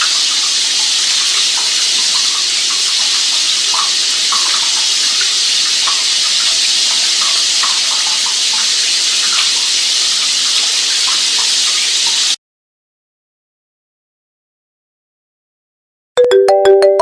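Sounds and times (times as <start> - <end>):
running water gurgling: 0.0 - 12.4.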